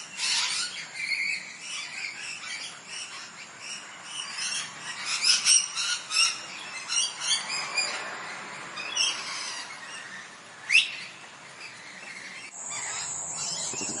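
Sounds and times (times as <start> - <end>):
parrot chirping and squawking: 0.0 - 14.0
parrot shrieking: 0.2 - 3.3.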